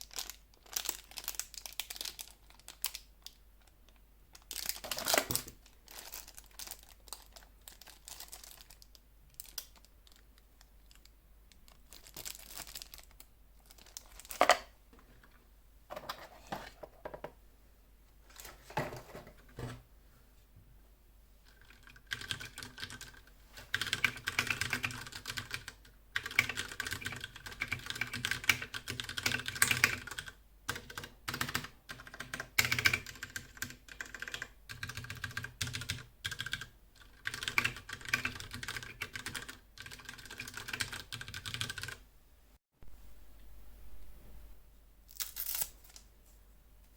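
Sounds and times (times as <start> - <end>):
mechanical keyboard typing: 21.7 - 42.0.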